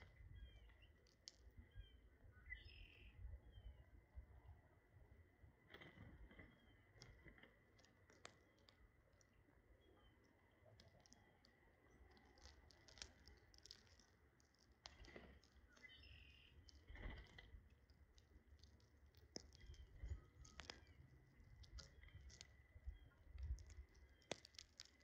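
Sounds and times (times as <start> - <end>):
birds pecking at food: 0.0 - 3.1, 5.2 - 25.0
faint bird chirps: 0.0 - 4.8, 6.4 - 7.2, 8.5 - 13.8, 14.9 - 17.6, 19.3 - 25.0.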